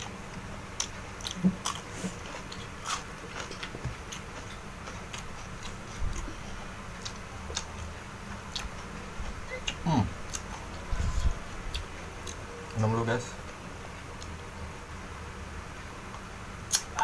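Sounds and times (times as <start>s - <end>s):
person chewing crunchy food: 0.0s - 12.8s
wet mouth clicks: 16.7s - 17.0s.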